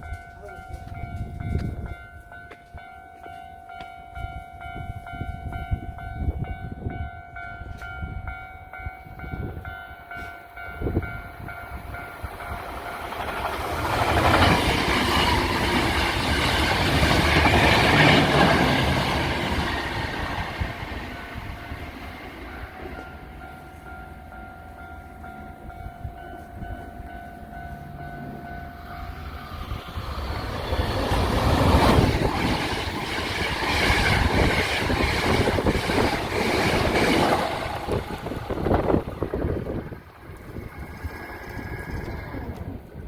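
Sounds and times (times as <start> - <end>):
train passing: 0.0 - 43.0.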